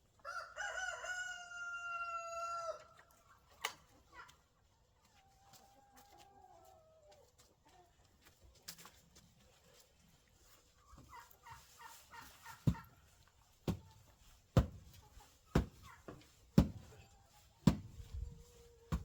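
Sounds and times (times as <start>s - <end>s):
chicken clucking: 0.2s - 19.0s
pickaxe striking ground: 14.6s - 15.0s, 15.6s - 15.9s, 16.6s - 17.0s, 17.7s - 18.2s.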